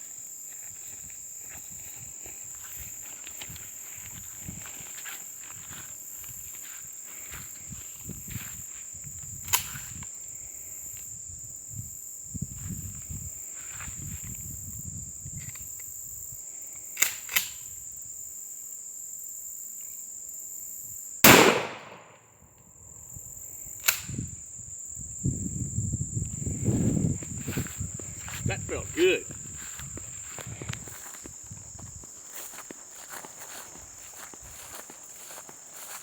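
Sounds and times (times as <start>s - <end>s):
crickets chirring: 0.0s - 36.0s
shotgun blast: 21.2s - 22.2s.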